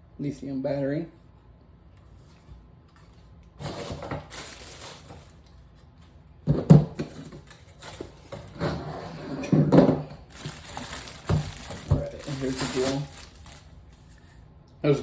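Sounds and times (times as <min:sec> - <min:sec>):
packaging rustling and crinkling: 0:03.6 - 0:05.6, 0:07.0 - 0:08.6, 0:10.2 - 0:14.3.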